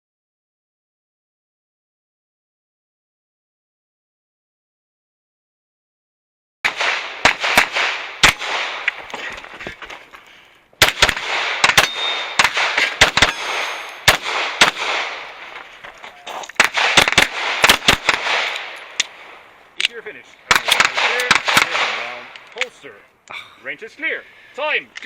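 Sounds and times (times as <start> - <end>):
handgun shots echoing: 6.7 - 9.5, 10.8 - 22.7.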